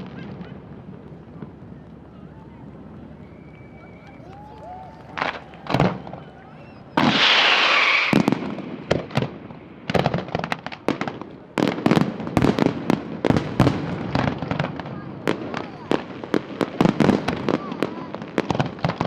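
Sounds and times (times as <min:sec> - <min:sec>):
fireworks bangs: 0:00.0 - 0:19.0
firework hissing rush: 0:06.9 - 0:09.2.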